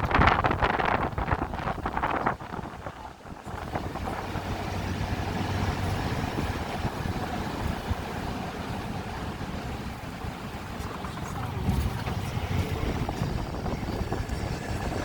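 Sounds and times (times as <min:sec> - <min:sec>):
engine running: 0:00.0 - 0:15.0
wind noise: 0:00.0 - 0:15.0.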